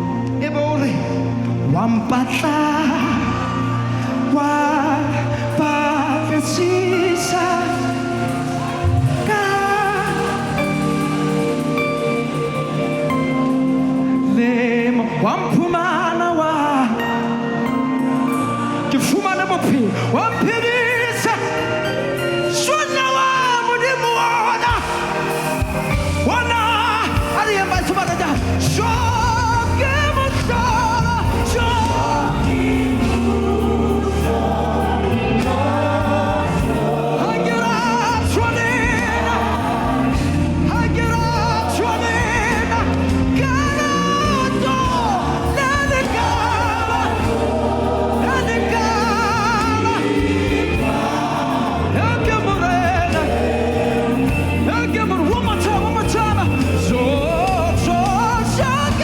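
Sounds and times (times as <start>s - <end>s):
instrumental backing with bass: 0.0s - 59.0s
voices singing with vibrato: 2.2s - 59.0s.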